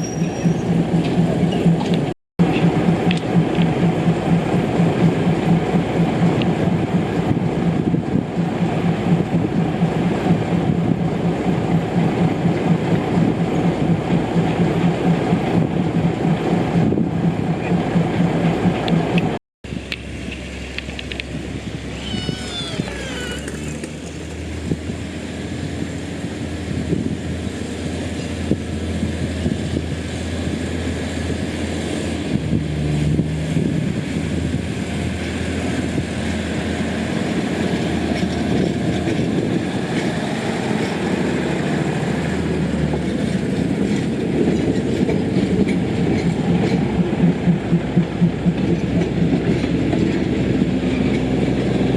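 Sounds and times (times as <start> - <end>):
train wheels clattering over rail joints: 0.0 - 19.4, 33.7 - 51.9
diesel train engine hum: 0.0 - 51.9.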